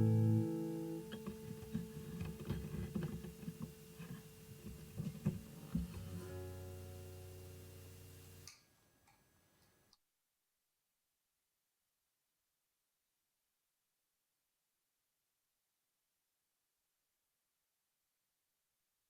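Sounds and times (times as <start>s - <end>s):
acoustic guitar picking: 0.0s - 8.0s.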